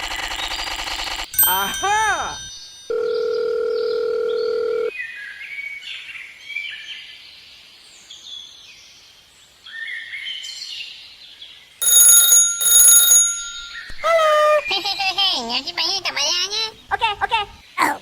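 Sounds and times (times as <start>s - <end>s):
loud ringing bell or alarm: 1.4s - 3.8s, 11.8s - 13.9s.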